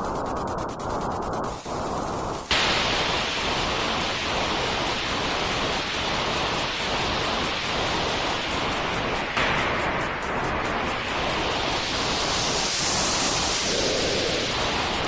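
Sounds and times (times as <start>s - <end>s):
white noise hiss: 0.0s - 15.0s.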